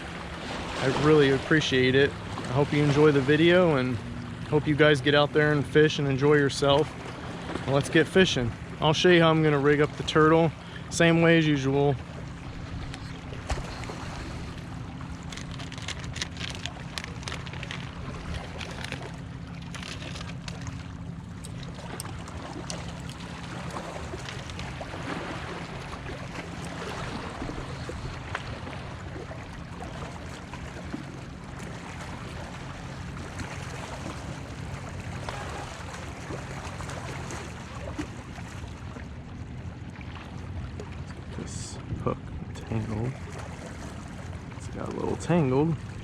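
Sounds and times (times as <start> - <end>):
lapping water: 0.0 - 38.3
steady low hum: 0.0 - 46.0
wind: 0.0 - 46.0
fishing tackle clicking and rattling: 15.2 - 20.7.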